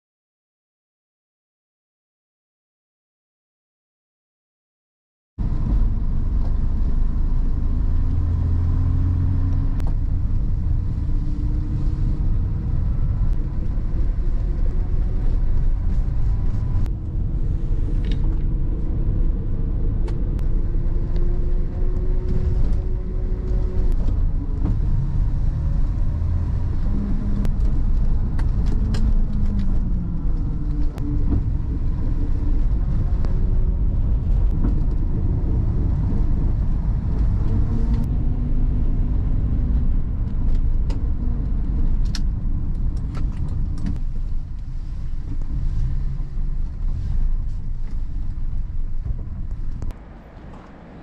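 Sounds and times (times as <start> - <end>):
car engine revving: 5.4 - 51.0
low road rumble: 5.4 - 51.0.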